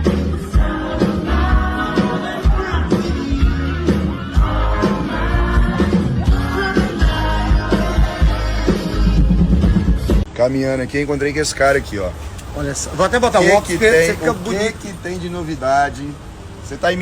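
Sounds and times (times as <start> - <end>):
pop music with singing: 0.0 - 10.3
strong bass line: 0.0 - 10.3
drum beat: 1.5 - 10.3.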